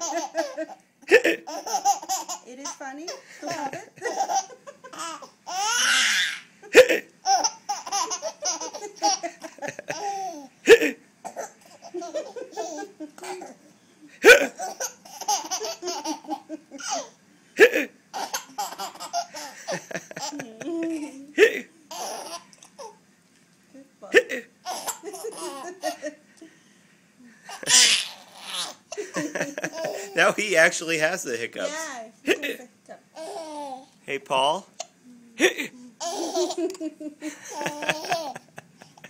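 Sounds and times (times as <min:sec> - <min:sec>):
small child giggling: 0:00.0 - 0:23.0, 0:24.1 - 0:26.2, 0:27.5 - 0:30.3, 0:35.4 - 0:39.0.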